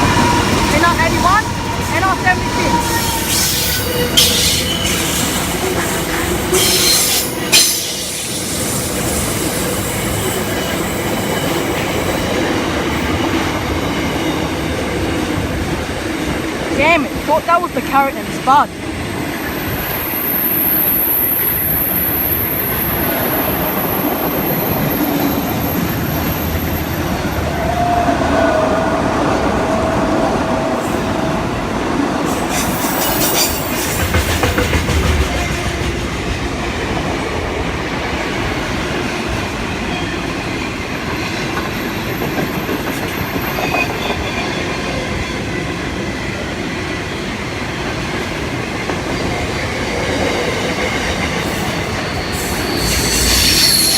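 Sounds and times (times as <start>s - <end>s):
high wheel squeal: 0.0s - 11.6s, 32.3s - 34.1s, 51.5s - 53.9s
train wheels clattering over rails: 32.3s - 45.8s.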